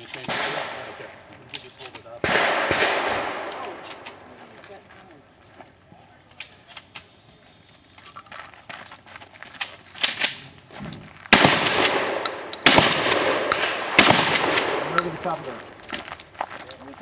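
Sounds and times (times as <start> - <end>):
shotgun blasts with echo: 0.0 - 1.3, 2.1 - 4.4, 11.3 - 15.8
faint sharp gunshots: 0.2 - 1.3, 2.1 - 4.4, 11.3 - 15.8.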